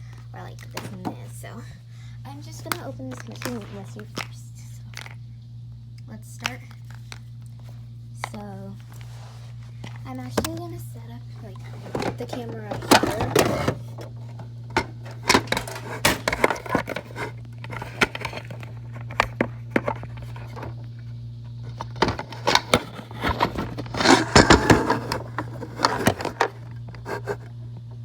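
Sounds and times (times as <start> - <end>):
steady low hum: 0.0 - 28.0
handling clicks and rustles: 11.4 - 27.6.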